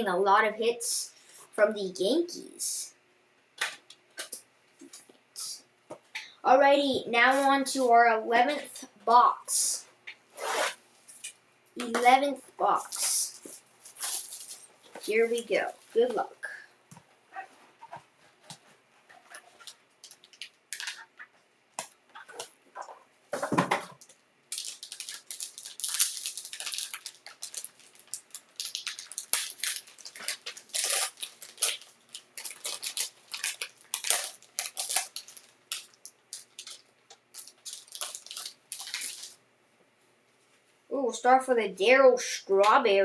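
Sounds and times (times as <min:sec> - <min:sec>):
packaging crinkling and tearing: 0:12.9 - 0:14.7, 0:19.2 - 0:22.5, 0:24.0 - 0:39.4.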